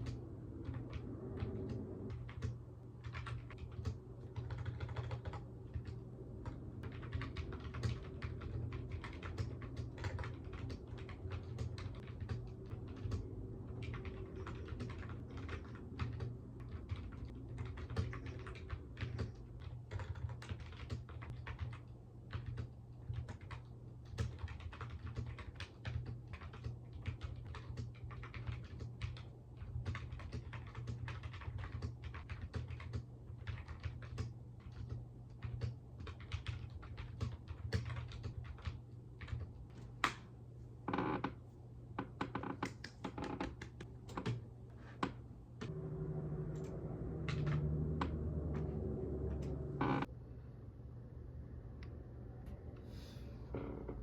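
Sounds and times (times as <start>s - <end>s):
typing on computer keyboard: 0.0s - 40.2s, 42.0s - 44.4s
steady low hum: 0.0s - 42.9s, 43.6s - 54.0s.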